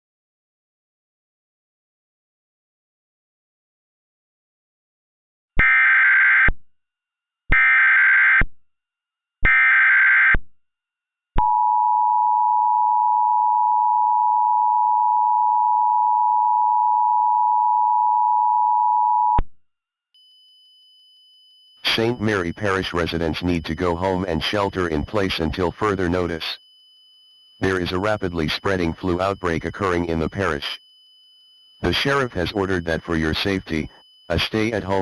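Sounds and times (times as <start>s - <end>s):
two-tone attention signal: 21.7s - 35.0s
digital data tone bursts: 21.8s - 35.0s.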